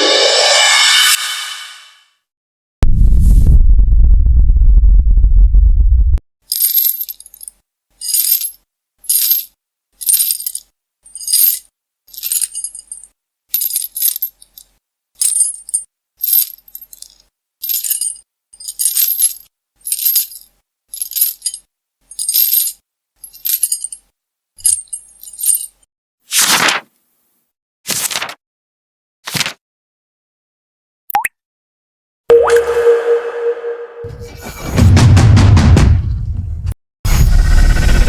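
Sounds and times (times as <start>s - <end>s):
high metallic jingling rattles: 6.5s - 25.8s.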